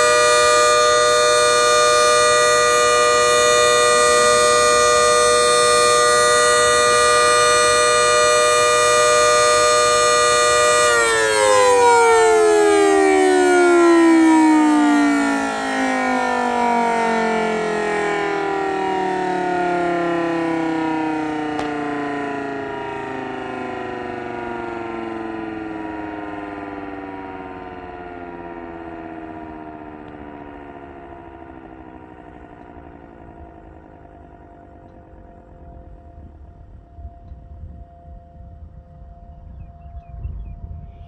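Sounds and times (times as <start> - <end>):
electromechanical siren winding down: 0.0 - 37.8.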